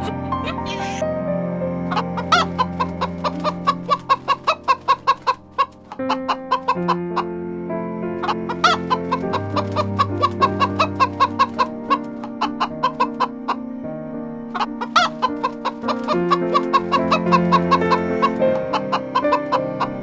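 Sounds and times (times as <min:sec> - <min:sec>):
background music with held chords: 0:00.0 - 0:20.0
chicken clucking: 0:01.9 - 0:07.3, 0:08.2 - 0:13.6, 0:14.5 - 0:20.0.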